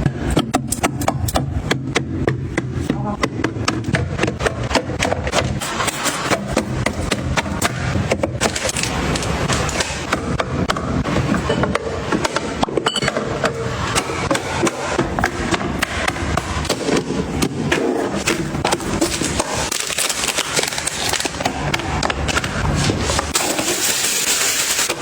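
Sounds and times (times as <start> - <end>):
small hard objects clicking and knocking: 3.7 - 10.2, 18.2 - 22.7.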